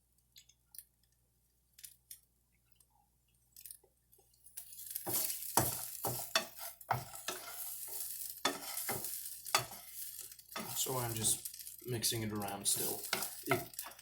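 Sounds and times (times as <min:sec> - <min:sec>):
rice sizzling in a frying pan: 0:04.5 - 0:14.0
utensil scraping and knocking pan: 0:04.9 - 0:11.6, 0:12.6 - 0:14.0.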